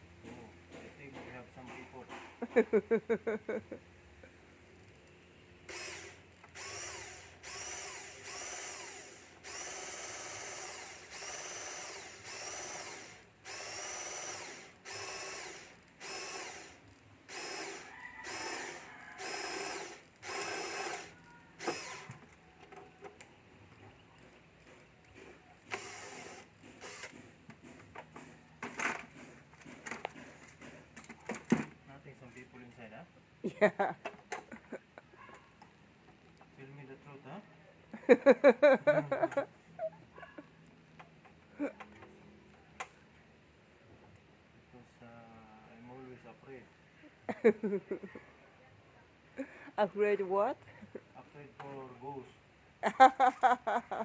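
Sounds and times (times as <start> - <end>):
cordless drill whining: 5.7 - 22.2, 25.7 - 27.2.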